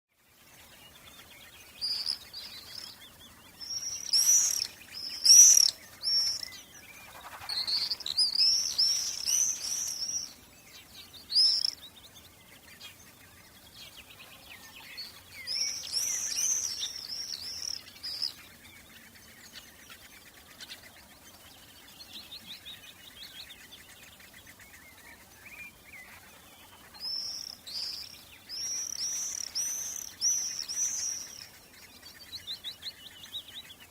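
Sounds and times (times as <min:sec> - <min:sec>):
songbirds chirping: 0:00.1 - 0:33.9.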